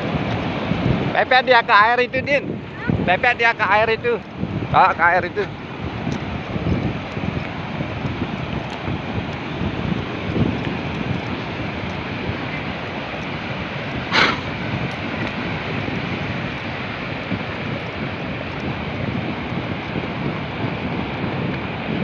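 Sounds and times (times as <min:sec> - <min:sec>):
steady outdoor rush: 0:00.0 - 0:22.0
wind buffeting microphone: 0:00.0 - 0:22.0
short sharp noise burst: 0:14.1 - 0:14.6.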